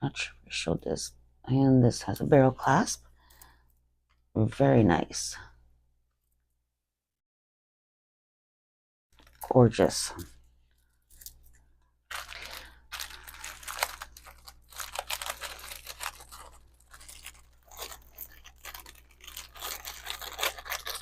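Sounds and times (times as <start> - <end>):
packaging crinkling: 9.2 - 9.5, 10.8 - 21.0.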